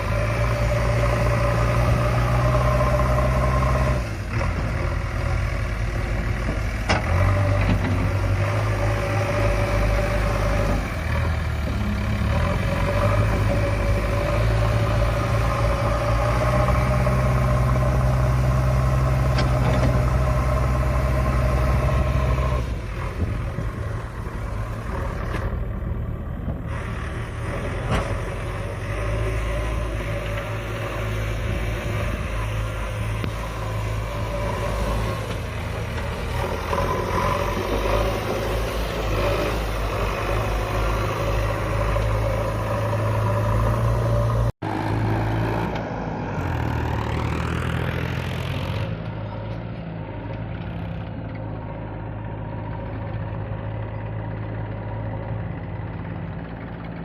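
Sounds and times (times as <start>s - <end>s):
diesel engines running: 0.0s - 57.0s.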